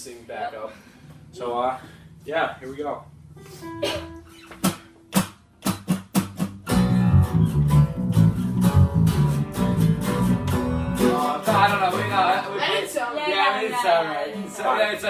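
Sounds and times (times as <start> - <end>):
electric guitar riff: 3.4 - 12.7
bass guitar notes: 5.1 - 12.6.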